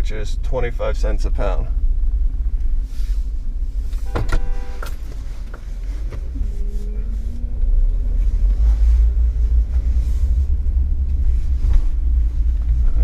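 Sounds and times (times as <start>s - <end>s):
truck engine rumbling: 0.0s - 13.0s
vehicle horn beep: 4.0s - 5.1s.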